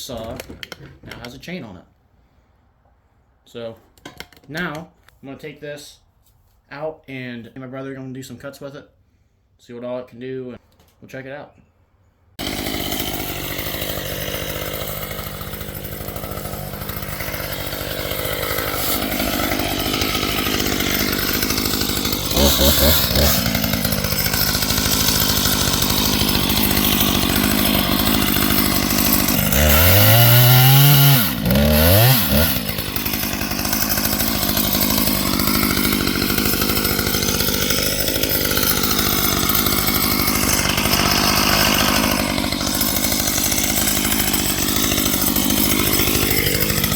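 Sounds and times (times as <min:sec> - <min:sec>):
chainsaw revving: 0:12.4 - 0:46.9.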